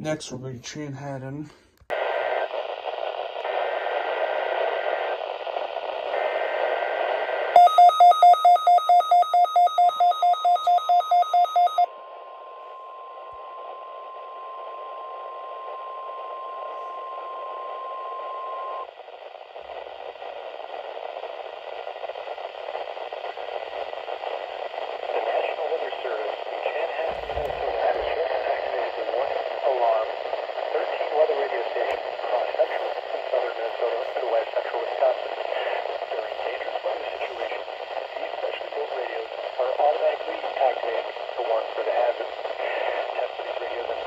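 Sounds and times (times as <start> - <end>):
radio static hiss: 0.9 - 7.6, 11.6 - 44.0
steady warning alarm tone: 7.6 - 18.8.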